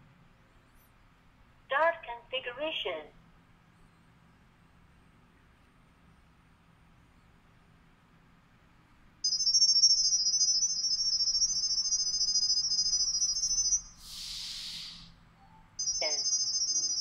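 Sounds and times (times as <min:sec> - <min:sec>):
high-pitched electronic tone: 0:09.3 - 0:17.0
burst of hiss: 0:14.0 - 0:15.2.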